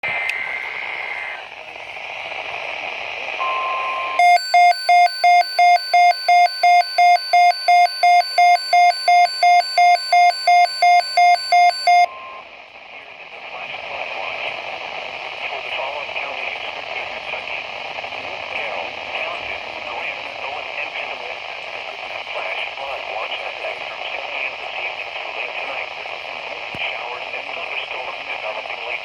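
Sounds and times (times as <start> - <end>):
radio hiss: 0.0 - 29.0
steady warning alarm tone: 3.4 - 12.1
receiver alarm beeping: 3.4 - 12.4.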